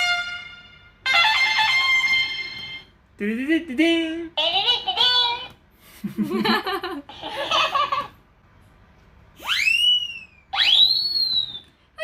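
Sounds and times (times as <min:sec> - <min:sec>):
squeaky toy voice: 0:04.4 - 0:05.5.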